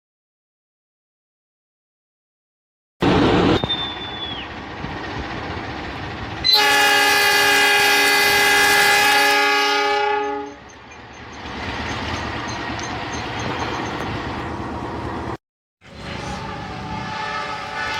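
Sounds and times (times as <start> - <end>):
passing train running noise: 3.0 - 17.9
locomotive horn blast: 6.4 - 10.6, 15.9 - 17.9.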